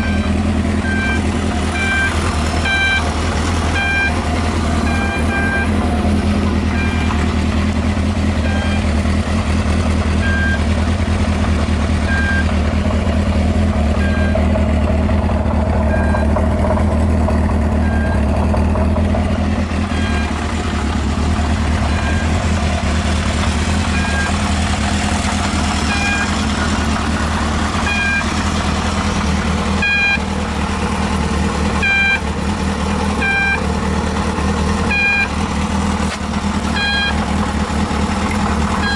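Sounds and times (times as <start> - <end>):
short electronic beep: 0.0 - 3.1, 3.8 - 4.2, 4.8 - 5.8, 6.7 - 7.3, 8.4 - 9.0, 10.2 - 10.8, 12.0 - 12.6, 14.0 - 14.5, 15.8 - 16.4, 17.8 - 18.3, 19.9 - 20.4, 21.8 - 22.6, 23.8 - 24.4, 25.8 - 26.4, 27.8 - 28.4, 29.8 - 30.2, 31.8 - 32.2, 33.2 - 33.6, 34.9 - 35.3, 36.7 - 37.2
motorcycle engine idling: 0.0 - 38.9.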